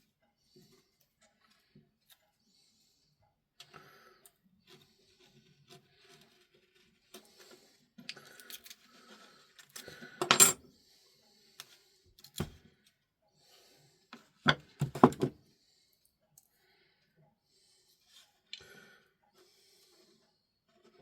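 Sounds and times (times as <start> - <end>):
rustling and scraping of tools: 4.6 - 10.6, 14.2 - 15.4.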